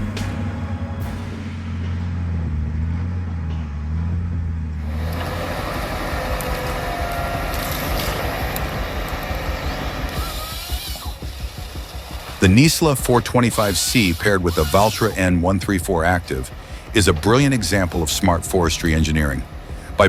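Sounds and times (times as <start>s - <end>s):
heavy vehicle engine droning: 0.0s - 20.0s
machine hissing and clattering: 4.9s - 20.0s.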